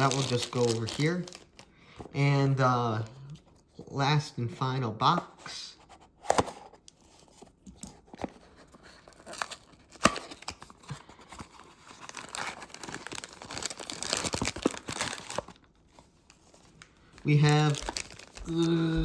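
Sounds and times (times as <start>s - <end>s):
packaging tearing and crinkling: 0.0s - 1.7s, 8.9s - 15.7s, 17.2s - 19.0s.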